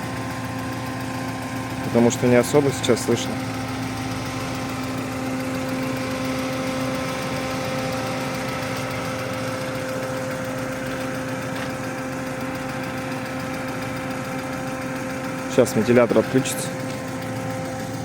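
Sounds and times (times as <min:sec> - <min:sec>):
car engine idling: 0:00.0 - 0:18.0
electric radiator fan: 0:00.0 - 0:18.0.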